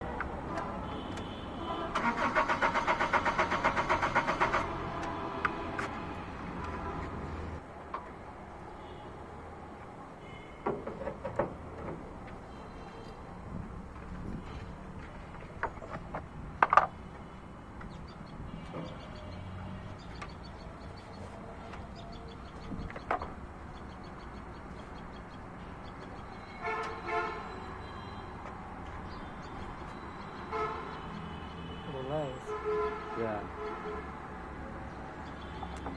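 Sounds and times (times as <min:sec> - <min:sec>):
car engine cranking without starting: 0:01.9 - 0:05.0
sharp clicks and knocks: 0:15.0 - 0:17.0.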